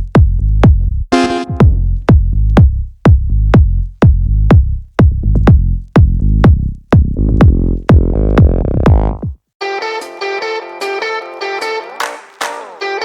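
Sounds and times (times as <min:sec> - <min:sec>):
heavy kick drum: 0:00.0 - 0:09.4
electronic dance music: 0:01.1 - 0:01.8, 0:07.9 - 0:13.0
synth chords: 0:01.1 - 0:01.8.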